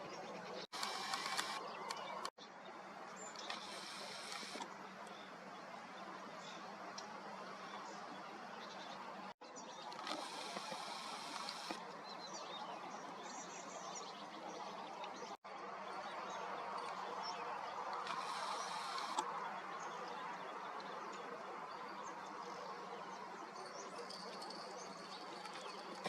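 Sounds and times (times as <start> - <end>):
small birds chirping: 16.0 - 26.0.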